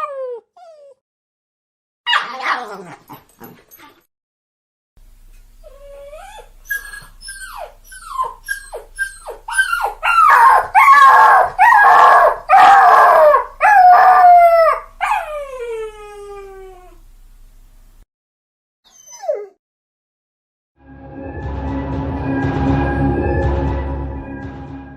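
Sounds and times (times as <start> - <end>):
dog whining and howling: 0.0 - 1.0, 5.6 - 17.0, 18.9 - 19.6.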